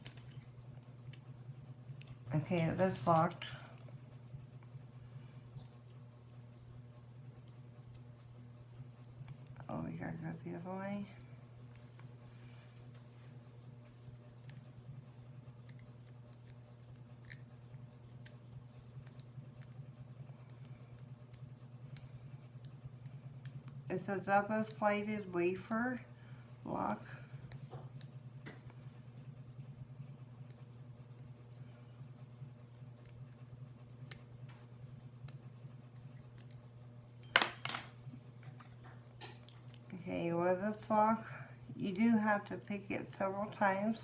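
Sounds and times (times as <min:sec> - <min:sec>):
steady low hum: 0:00.0 - 0:44.0.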